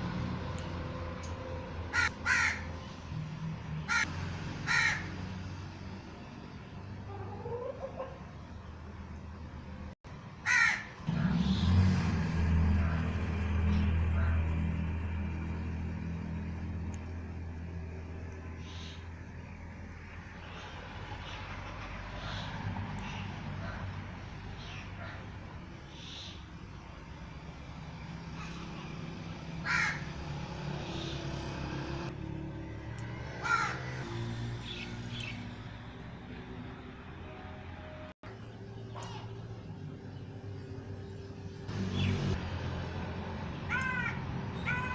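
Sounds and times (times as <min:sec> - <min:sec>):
low engine rumble: 0:00.0 - 0:10.4, 0:11.0 - 0:44.9
crow cawing: 0:01.9 - 0:02.7, 0:03.9 - 0:05.2, 0:10.4 - 0:11.0, 0:29.6 - 0:30.1, 0:33.4 - 0:34.0, 0:43.7 - 0:44.9.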